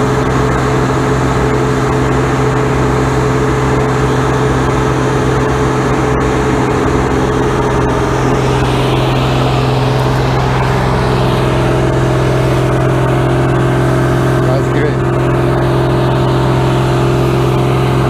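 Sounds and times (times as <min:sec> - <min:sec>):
farm machine engine running: 0:00.0 - 0:18.0.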